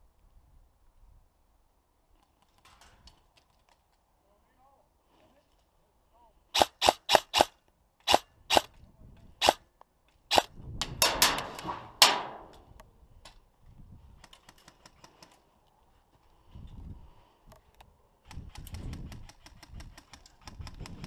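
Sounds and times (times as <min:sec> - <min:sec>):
airsoft gun shots: 0:06.6 - 0:07.5, 0:10.3 - 0:12.7.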